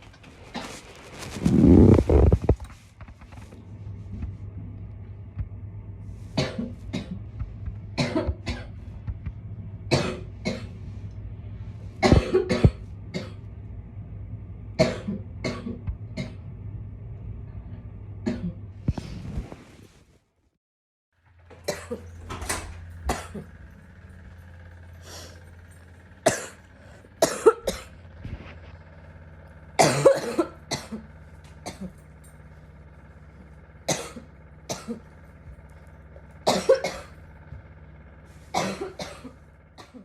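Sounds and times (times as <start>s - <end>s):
steady low hum: 0.0s - 19.7s, 21.2s - 40.0s
girl coughing: 6.4s - 7.2s, 8.0s - 8.7s, 9.9s - 10.7s, 12.0s - 13.3s, 21.7s - 22.1s, 23.1s - 23.4s, 26.2s - 26.6s, 27.2s - 27.9s, 29.8s - 32.0s, 33.9s - 35.0s, 36.5s - 37.1s, 38.6s - 40.0s.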